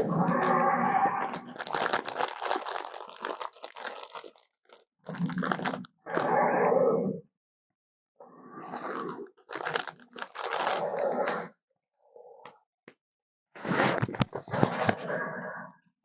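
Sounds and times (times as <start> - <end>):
growl-like creature calls: 0.0 - 2.0, 5.2 - 7.2, 10.6 - 11.5
monster crunching and chewing: 0.0 - 6.4, 8.6 - 11.5.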